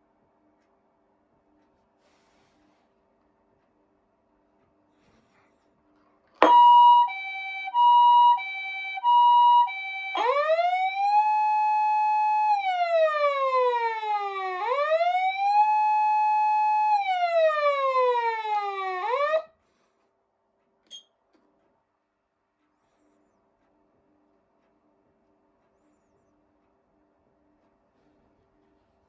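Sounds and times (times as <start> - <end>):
siren wail: 6.4 - 19.5
ambulance siren two-tone hi-lo: 6.4 - 19.6.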